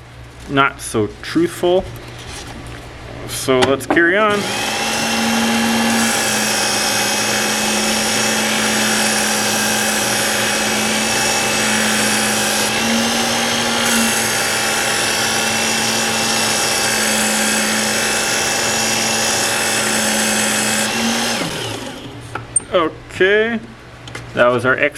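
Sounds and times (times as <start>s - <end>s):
electric belt sharpener motor hum: 4.3s - 22.2s.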